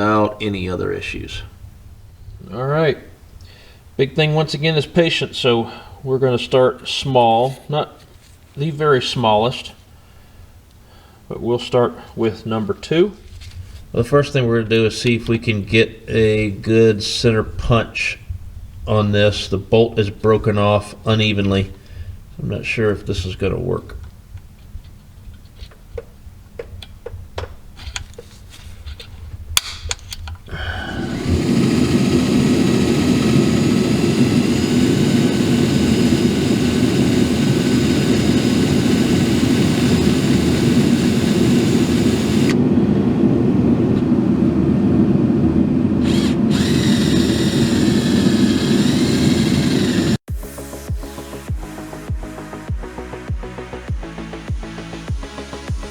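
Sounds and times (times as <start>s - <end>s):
power drill running: 30.5s - 42.6s, 46.0s - 50.3s.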